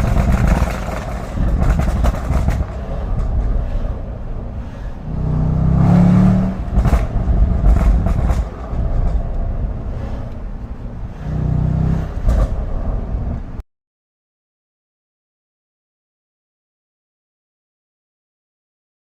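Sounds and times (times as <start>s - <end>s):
exhaust pops and crackles: 0.0s - 4.4s, 6.5s - 10.8s, 12.2s - 12.8s
car engine revving: 0.0s - 13.6s.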